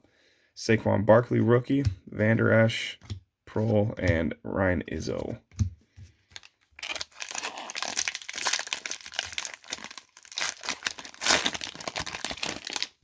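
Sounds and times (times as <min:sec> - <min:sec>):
foil wrapper crinkling and tearing: 0:06.4 - 0:13.0.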